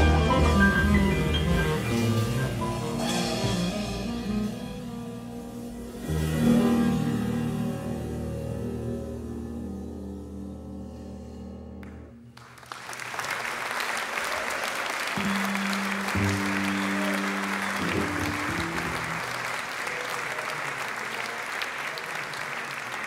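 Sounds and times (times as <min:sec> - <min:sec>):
jazz ensemble chord: 0:00.0 - 0:12.2, 0:15.2 - 0:19.6
low instrument notes: 0:00.0 - 0:12.4, 0:15.2 - 0:19.8
audience applause: 0:11.8 - 0:23.0.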